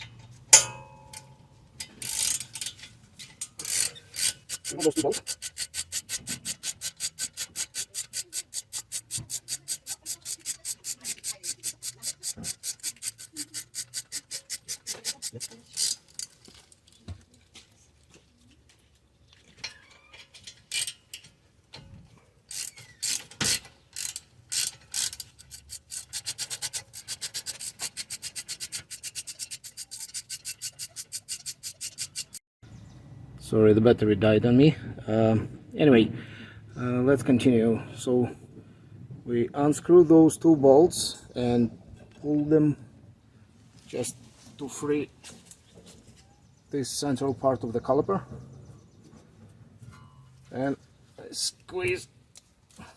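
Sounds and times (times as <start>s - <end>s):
ratchet wrench clicking: 0.6s - 16.4s, 20.7s - 21.2s, 22.5s - 32.4s
scattered knocks and clicks: 3.6s - 16.3s, 24.6s - 32.4s.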